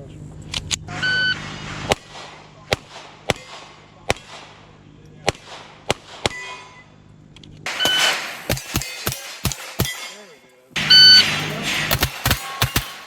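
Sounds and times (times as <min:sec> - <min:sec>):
rimfire gunshots: 0:00.9 - 0:06.7, 0:07.7 - 0:10.2, 0:10.8 - 0:13.0
shot timer beeping: 0:10.8 - 0:11.5.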